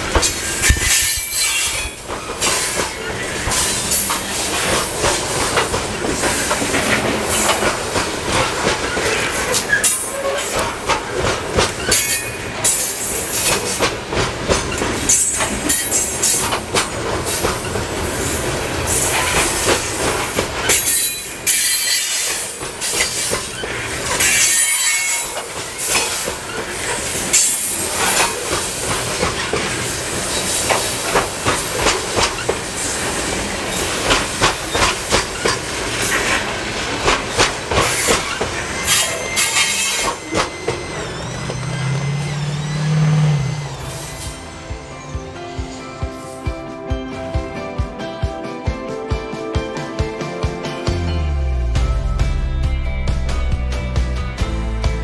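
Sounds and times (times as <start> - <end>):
train wheels clacking over rail joints: 0.0 - 46.7
high-pitched wheel squeal: 0.4 - 4.1, 23.5 - 27.8, 37.9 - 45.1.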